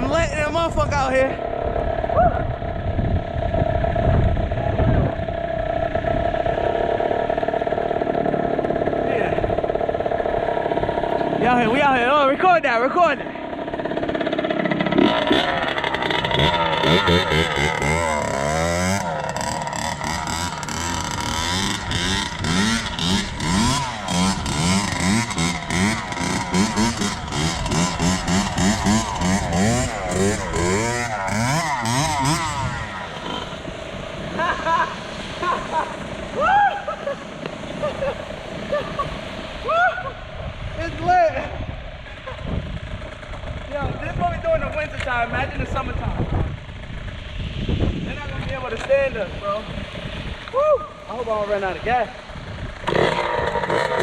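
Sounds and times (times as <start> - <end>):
dirt bike engine high revs: 0.0 - 12.2, 13.1 - 36.4, 51.1 - 54.0
low rumbling: 0.0 - 54.0.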